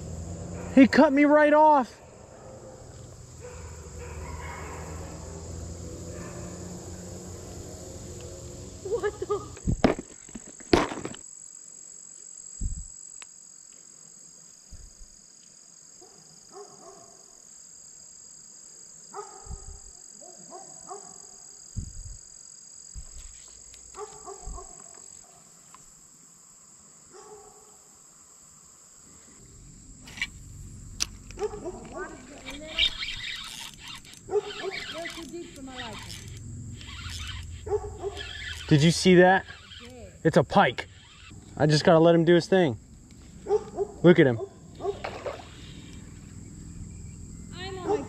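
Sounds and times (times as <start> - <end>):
insects droning: 0.0 - 48.0
short pitched calls: 31.2 - 41.7, 43.1 - 48.0.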